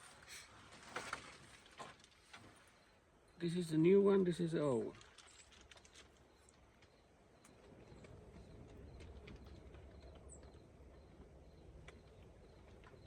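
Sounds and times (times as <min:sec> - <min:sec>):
low background hum: 0:01.6 - 0:13.0.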